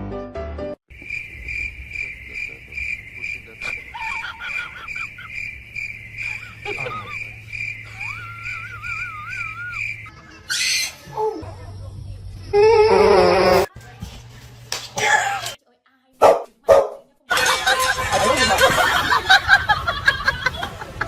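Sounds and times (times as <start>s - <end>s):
cricket chirping: 0.9s - 10.1s
wavering whistle-like call: 7.8s - 10.9s.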